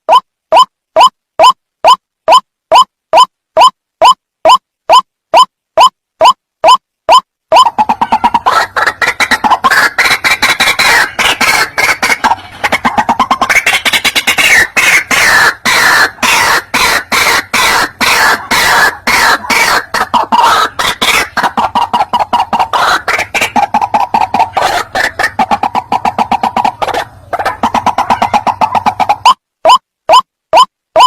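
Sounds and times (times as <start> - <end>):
bird calling harshly: 7.5 - 31.0.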